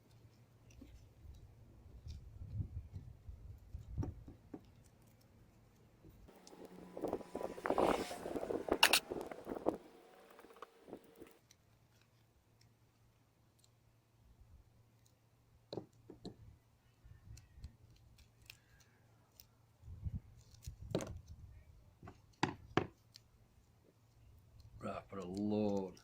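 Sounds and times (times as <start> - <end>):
tools clicking and knocking: 6.4 - 11.3.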